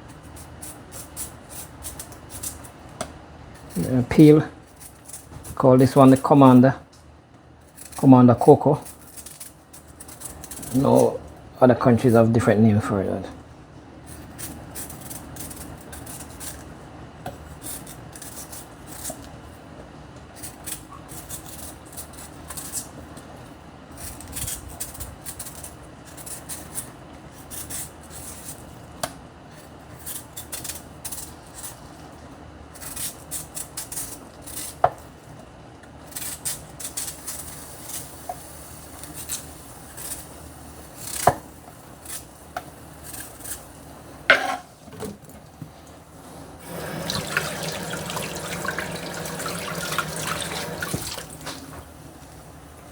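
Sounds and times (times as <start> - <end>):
knife scraping root: 46.6 - 51.8.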